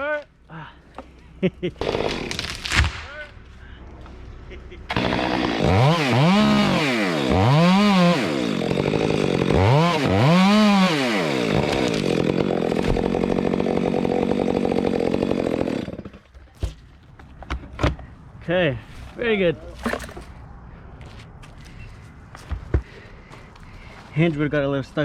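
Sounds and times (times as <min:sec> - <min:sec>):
chainsaw revving and cutting: 0:01.8 - 0:02.7, 0:04.9 - 0:16.2.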